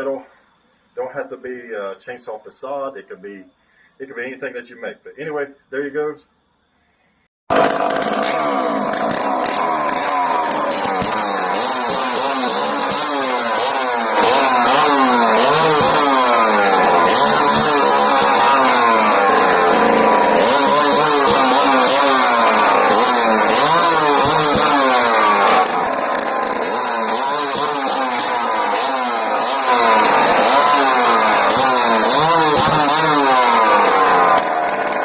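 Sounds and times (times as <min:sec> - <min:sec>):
chainsaw engine revving: 0:07.5 - 0:35.0.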